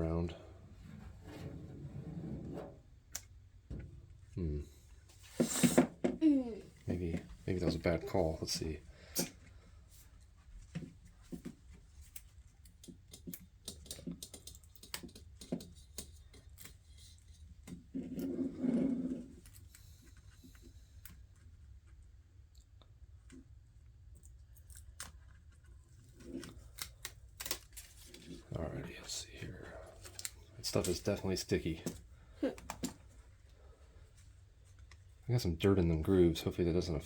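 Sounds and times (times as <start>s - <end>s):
faint low hum: 0.0s - 5.6s, 15.8s - 37.0s
grip tape handling clicks and crinkles: 24.6s - 28.4s.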